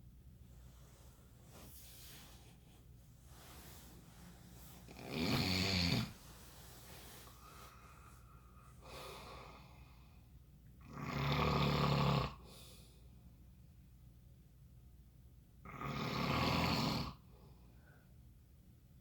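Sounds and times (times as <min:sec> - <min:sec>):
quiet breath: 0:00.4 - 0:10.5, 0:12.4 - 0:13.4, 0:17.2 - 0:18.4
person snoring: 0:04.8 - 0:06.2, 0:10.9 - 0:12.5, 0:15.7 - 0:17.2.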